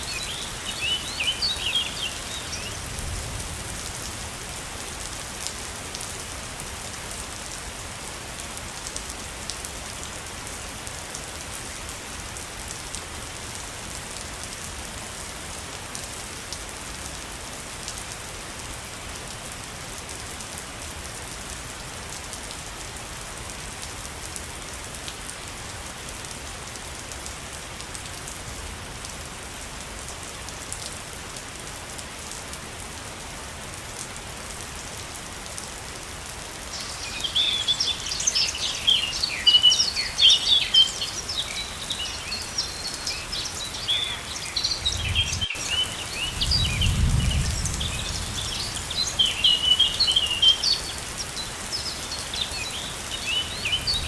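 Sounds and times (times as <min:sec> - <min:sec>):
waterfall rushing: 0:00.0 - 0:02.7, 0:36.6 - 0:46.8, 0:47.8 - 0:54.0.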